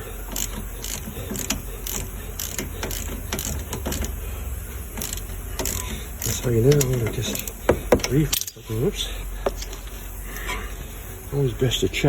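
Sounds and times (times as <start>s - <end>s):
ratchet wrench clicking: 0.0s - 4.2s, 4.8s - 8.7s, 9.4s - 10.5s.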